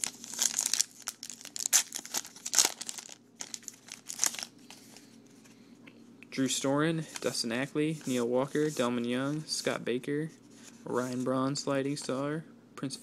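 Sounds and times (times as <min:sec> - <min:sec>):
wrapper tearing and crinkling: 0:00.0 - 0:04.6.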